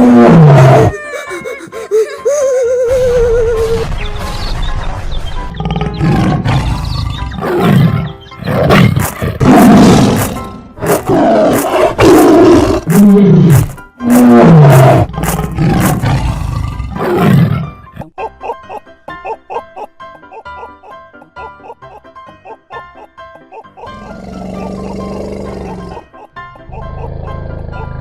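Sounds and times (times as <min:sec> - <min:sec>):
large animal roaring and growling: 0:00.0 - 0:00.9, 0:05.6 - 0:17.7, 0:23.9 - 0:26.0.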